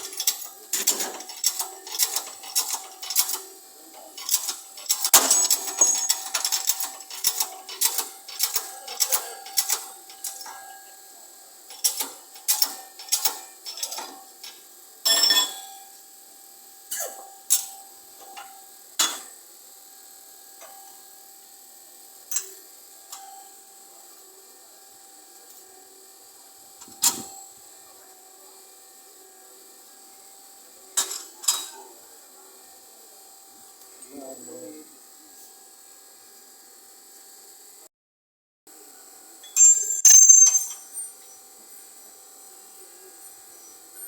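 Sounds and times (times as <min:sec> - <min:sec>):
sharp metallic clicks and clanks: 0:00.0 - 0:10.6, 0:11.7 - 0:14.6, 0:39.6 - 0:41.1.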